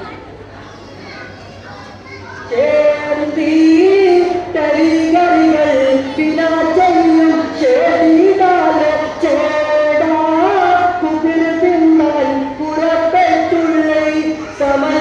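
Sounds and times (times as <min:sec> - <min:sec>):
voices singing together: 0:02.4 - 0:15.0.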